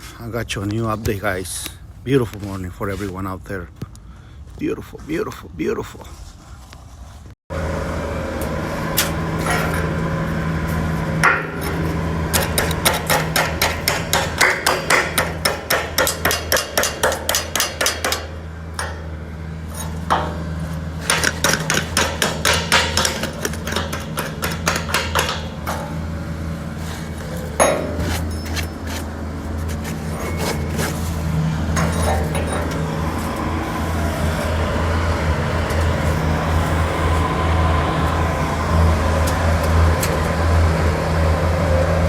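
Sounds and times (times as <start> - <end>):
engine hum: 7.5 - 42.0
hammer striking steel: 8.9 - 10.2, 11.2 - 26.2, 26.9 - 38.6.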